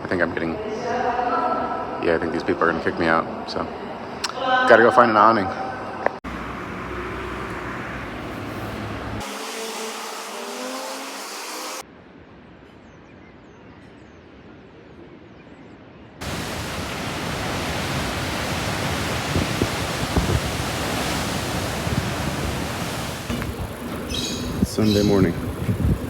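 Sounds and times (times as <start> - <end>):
steady rushing noise: 16.2 - 26.0.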